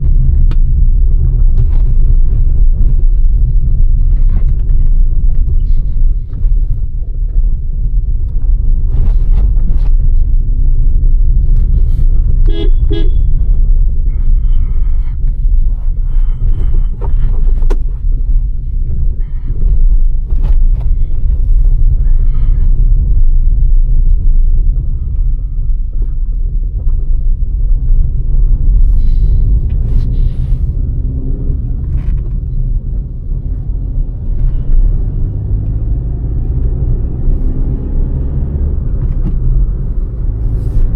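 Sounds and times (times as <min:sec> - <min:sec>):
road and engine drone in car cabin: 0:00.0 - 0:40.9
vehicle horn toot: 0:12.4 - 0:13.4.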